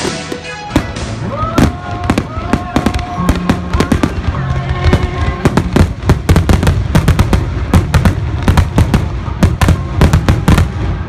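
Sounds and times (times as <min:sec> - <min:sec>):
fireworks bangs and cracks: 0:00.0 - 0:11.0
music: 0:00.0 - 0:11.0.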